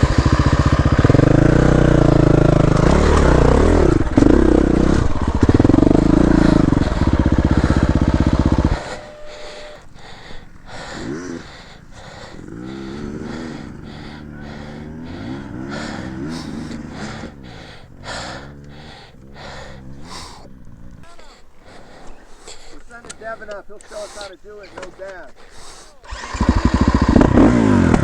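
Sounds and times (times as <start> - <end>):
dirt bike engine revving: 0.0 - 28.0.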